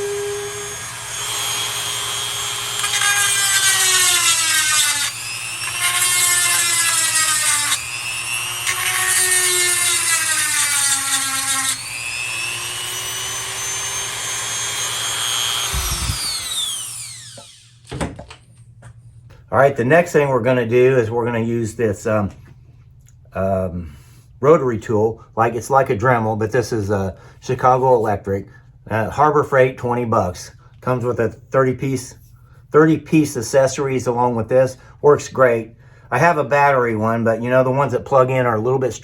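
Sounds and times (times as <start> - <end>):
grinding wheel motor whining: 11.8 - 17.7.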